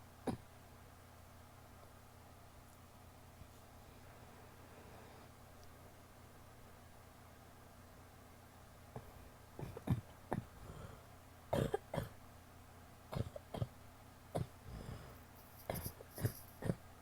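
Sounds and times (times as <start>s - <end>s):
woman coughing: 11.6s - 12.2s, 13.2s - 13.7s.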